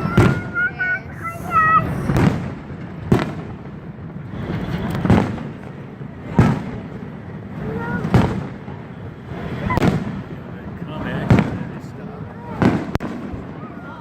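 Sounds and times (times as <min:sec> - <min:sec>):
fireworks booming: 0:00.0 - 0:14.0.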